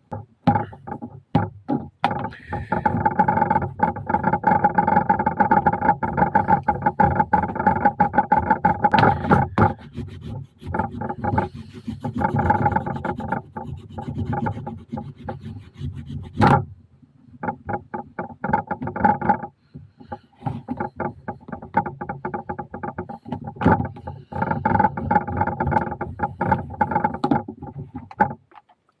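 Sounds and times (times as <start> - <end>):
hand rubbing wet leather: 2.1 - 16.4.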